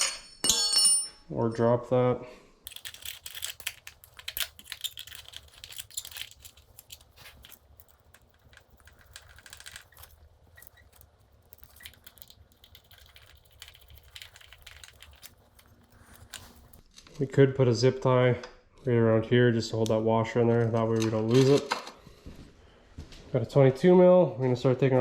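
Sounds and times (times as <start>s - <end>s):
small metal parts clinking: 2.7s - 16.8s.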